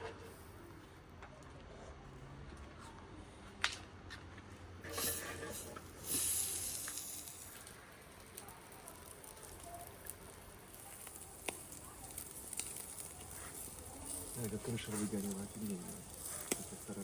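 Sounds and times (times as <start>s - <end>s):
fire crackling and popping: 4.8s - 17.0s.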